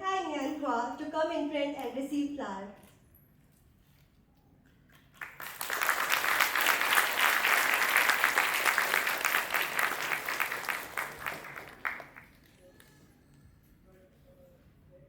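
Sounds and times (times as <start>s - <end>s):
audience applauding: 5.0s - 12.6s.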